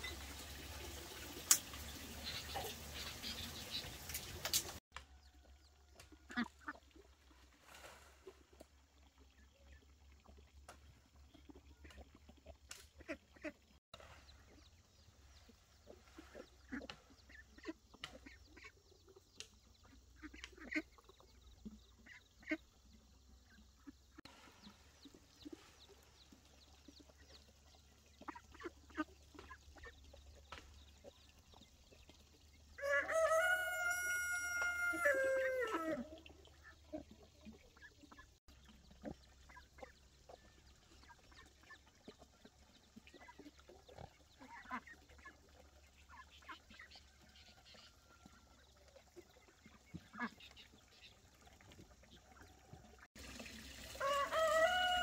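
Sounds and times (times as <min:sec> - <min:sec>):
rooster crowing: 0:32.8 - 0:36.0, 0:54.0 - 0:55.0.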